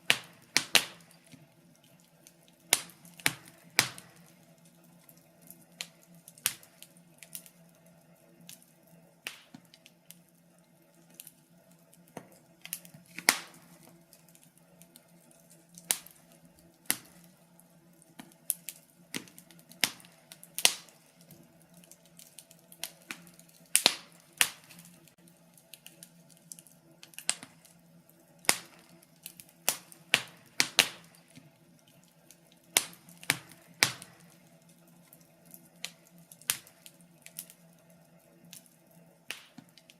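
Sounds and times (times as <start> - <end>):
burning logs popping: 0.0 - 39.9
steady low hum: 0.0 - 39.9
wood fire crackling: 0.0 - 39.9.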